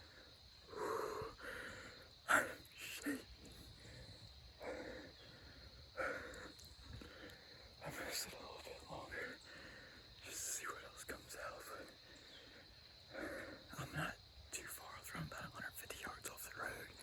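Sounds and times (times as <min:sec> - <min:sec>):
heavy excited breathing: 0:00.0 - 0:07.7, 0:12.0 - 0:13.7.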